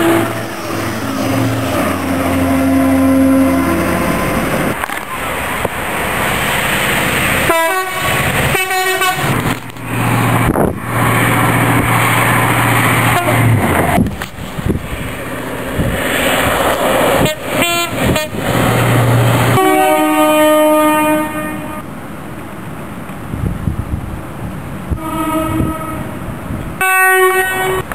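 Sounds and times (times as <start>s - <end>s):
train horn blasts: 0.0s - 4.8s, 7.5s - 9.6s, 13.1s - 13.6s, 17.2s - 18.4s, 19.4s - 21.8s, 24.9s - 26.2s, 26.8s - 27.9s
train rumble: 0.0s - 27.9s.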